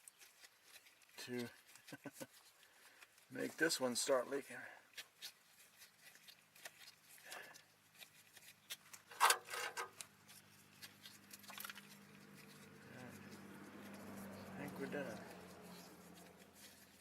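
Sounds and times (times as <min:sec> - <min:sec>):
clicks and rustling of hand work: 0:04.8 - 0:17.0.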